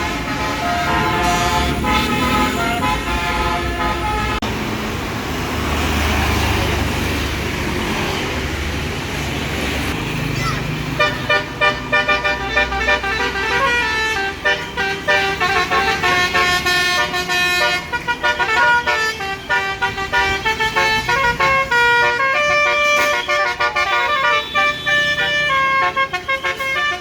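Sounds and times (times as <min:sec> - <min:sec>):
bus horn playing a melody: 0:00.0 - 0:04.5, 0:11.0 - 0:27.0.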